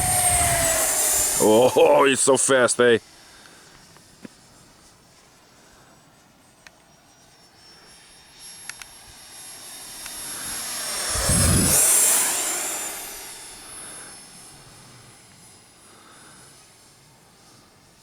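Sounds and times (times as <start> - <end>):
electric jet fan whine: 0.0 - 4.1, 7.1 - 16.8.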